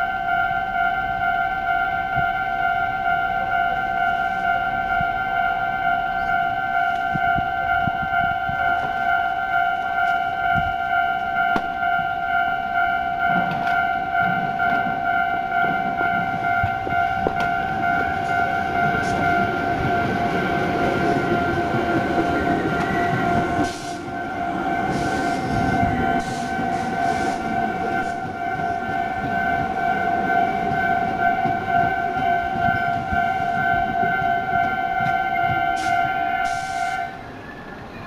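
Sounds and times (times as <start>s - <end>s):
level crossing bell ringing: 0.0s - 35.8s
train rumbling: 0.6s - 38.0s
wheels clacking over rail joints: 13.1s - 36.2s.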